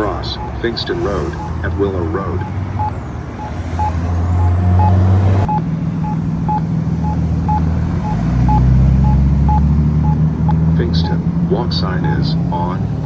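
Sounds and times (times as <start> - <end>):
short even beeps: 0.0 - 0.6, 1.3 - 1.7, 2.4 - 11.2
vehicle engines rumbling: 0.0 - 13.0.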